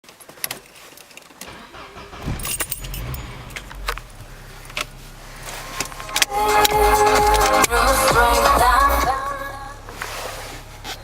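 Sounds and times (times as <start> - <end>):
keys and ignition clicks: 0.4 - 8.1
car engine starting and running: 0.5 - 11.0
sharp engine knocks: 1.5 - 8.3.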